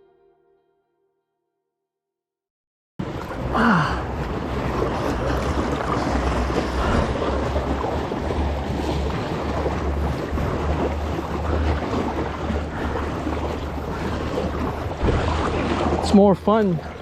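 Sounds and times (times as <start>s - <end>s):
water washing around kayak: 3.0s - 17.0s
wind buffeting microphone: 3.0s - 17.0s.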